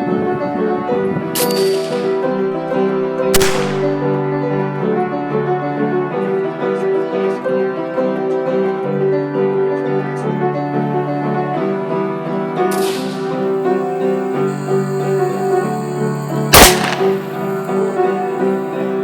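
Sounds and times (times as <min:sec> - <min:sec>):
sharp bang: 0:03.4 - 0:04.2, 0:13.6 - 0:18.9.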